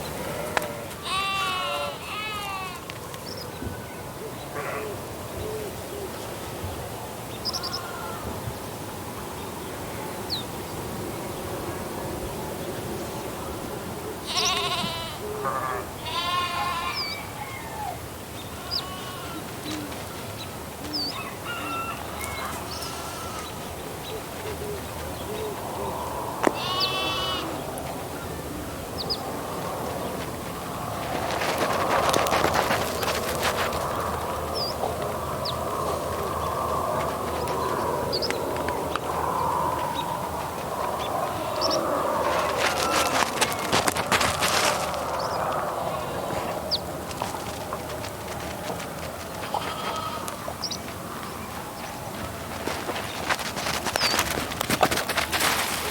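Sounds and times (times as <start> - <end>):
rural background hum: 0.0 - 55.9
sheep bleating: 0.3 - 2.8, 14.2 - 17.3, 18.5 - 19.6, 22.4 - 23.6, 26.5 - 27.6, 49.4 - 50.4.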